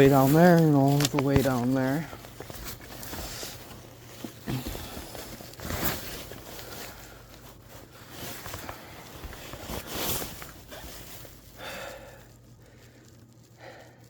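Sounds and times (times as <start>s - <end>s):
brushing scrapes: 0.0s - 11.5s
person rustling and scuffing: 0.0s - 13.8s.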